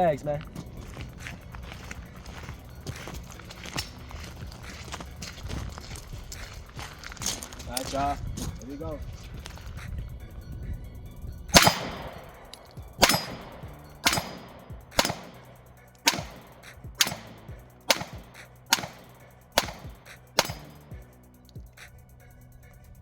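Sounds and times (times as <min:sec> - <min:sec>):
pistol shots with ringing tail: 0:11.5 - 0:21.1.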